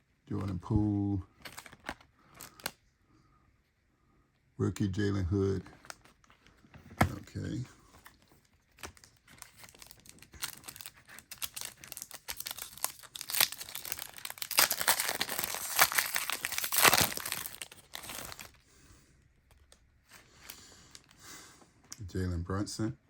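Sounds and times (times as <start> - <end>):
plastic wrapper crinkling and tearing: 1.3 - 2.8, 5.6 - 18.6.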